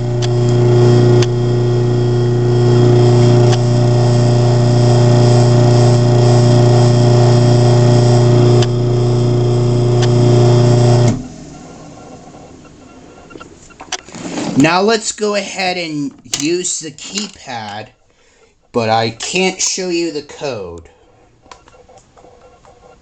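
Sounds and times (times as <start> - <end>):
garage door opener motor hum: 0.0 - 12.0.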